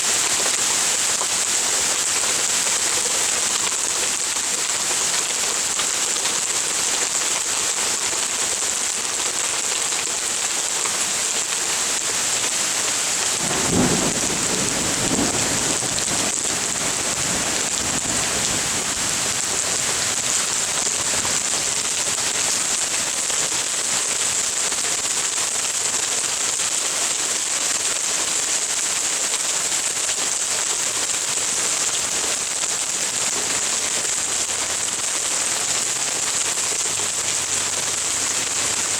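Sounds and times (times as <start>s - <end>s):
hail and heavy rain: 0.0s - 38.9s
thunder clap rumbling: 13.4s - 19.1s.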